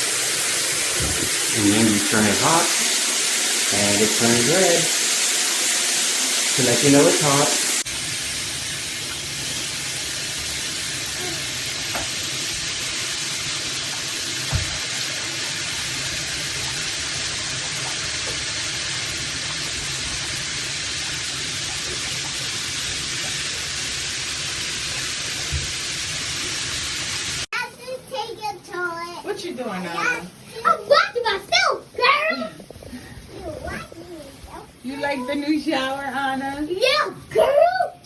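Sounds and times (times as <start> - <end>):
water spraying from shower head: 0.0 - 27.5.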